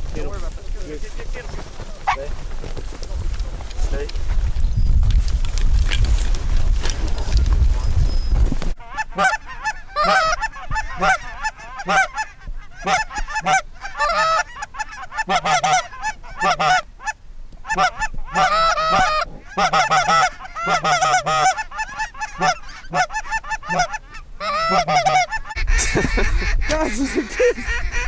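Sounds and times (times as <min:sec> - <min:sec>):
geese honking and clucking: 0:00.0 - 0:04.1, 0:06.9 - 0:28.0.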